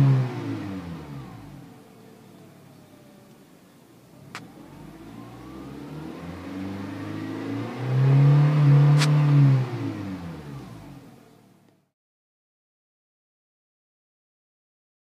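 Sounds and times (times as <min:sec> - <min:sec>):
car engine and exhaust revving: 0:00.0 - 0:11.8
sharp click: 0:08.9 - 0:09.2.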